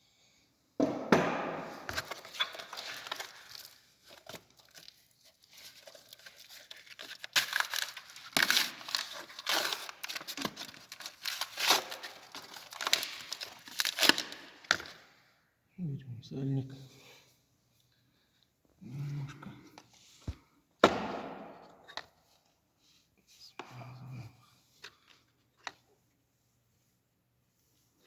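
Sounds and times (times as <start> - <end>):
packaging crinkling and tearing: 1.9 - 15.0.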